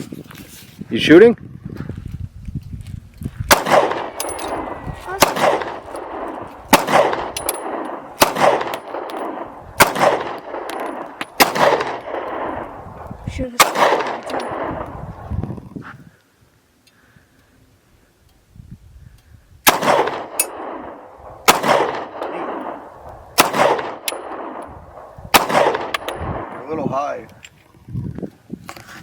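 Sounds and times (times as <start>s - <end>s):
pistol shots with echo: 3.5s - 12.8s, 13.6s - 15.0s, 19.6s - 26.6s.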